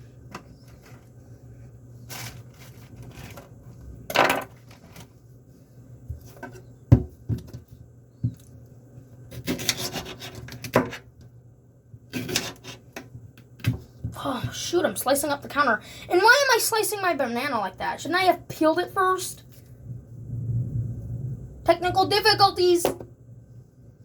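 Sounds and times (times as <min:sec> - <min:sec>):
knife scraping fruit: 0:09.3 - 0:11.0, 0:12.1 - 0:13.0.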